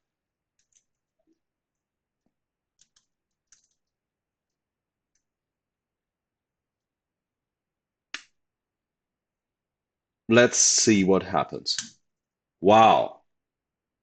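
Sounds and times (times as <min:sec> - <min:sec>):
keyboard clicks: 0:02.8 - 0:03.8.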